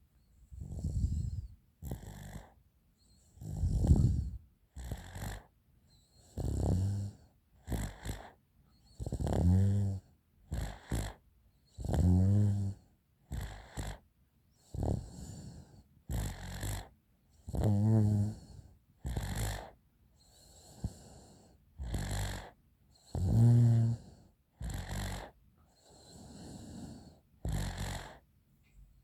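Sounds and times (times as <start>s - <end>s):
loud pitched snore: 0.6s - 2.5s, 3.4s - 5.5s, 6.2s - 8.4s, 9.0s - 11.2s, 11.8s - 14.0s, 14.7s - 18.5s, 19.1s - 21.2s, 21.8s - 28.2s.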